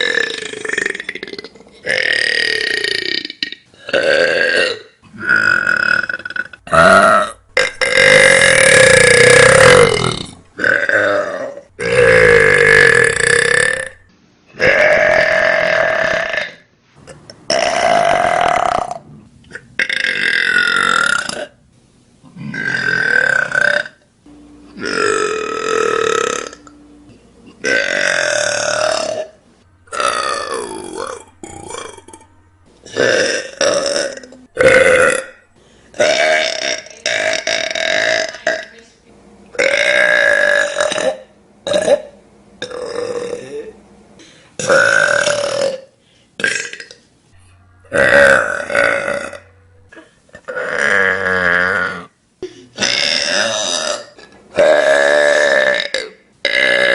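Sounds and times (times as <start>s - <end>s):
person burping loudly: 0.0s - 14.0s, 14.6s - 21.6s, 22.4s - 24.1s, 24.7s - 38.8s, 39.5s - 47.0s, 47.8s - 52.1s, 52.7s - 56.9s.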